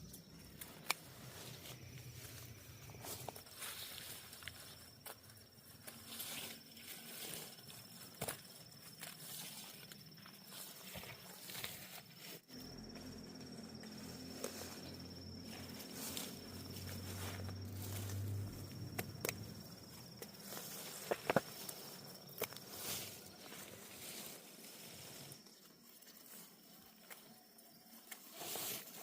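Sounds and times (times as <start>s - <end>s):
high insect trill: 0.0s - 29.0s
rustling and crackling: 0.1s - 27.3s
low hum: 12.5s - 21.1s.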